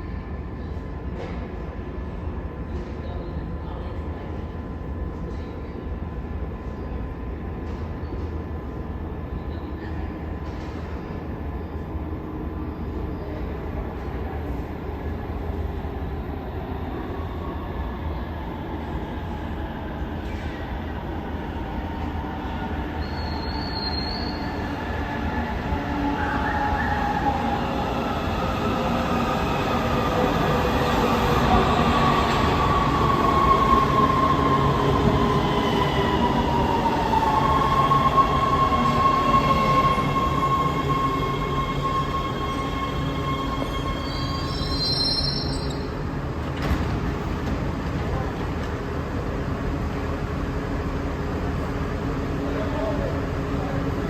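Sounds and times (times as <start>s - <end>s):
subway train rumble: 0.0s - 54.0s
wheel and brake squeal: 23.0s - 24.4s, 40.8s - 45.9s.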